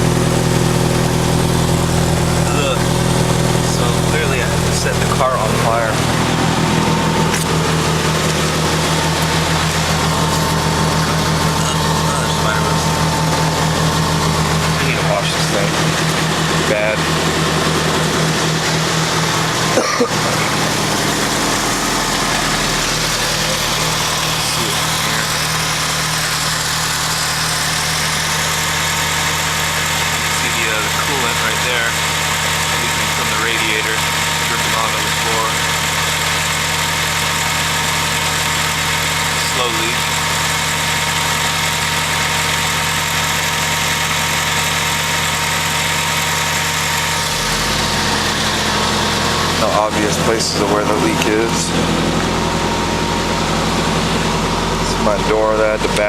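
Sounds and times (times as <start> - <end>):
car engine idling: 0.0 - 56.0.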